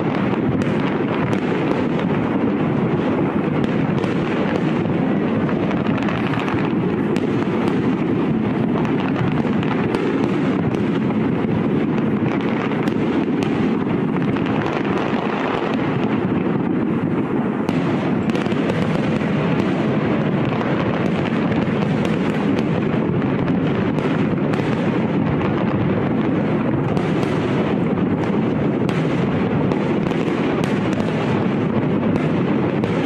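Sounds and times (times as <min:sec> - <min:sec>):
fireworks bangs and crackles: 0:00.0 - 0:33.0.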